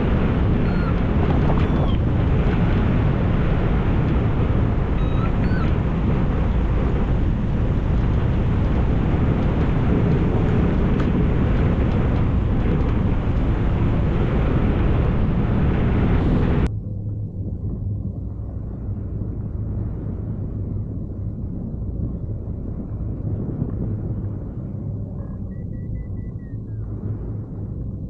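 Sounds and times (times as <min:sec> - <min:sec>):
wind buffeting microphone: 0:00.0 - 0:28.0
faint high chirps: 0:00.7 - 0:01.0, 0:05.0 - 0:05.7.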